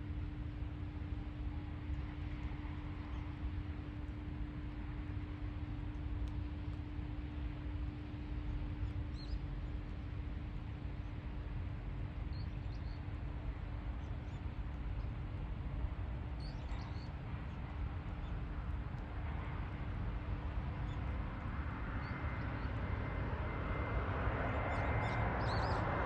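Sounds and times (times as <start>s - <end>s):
faint hum: 0.0s - 26.0s.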